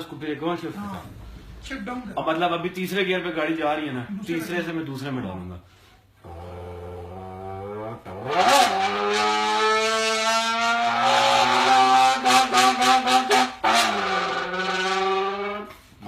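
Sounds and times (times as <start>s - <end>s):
person imitating car engine: 6.2s - 15.7s.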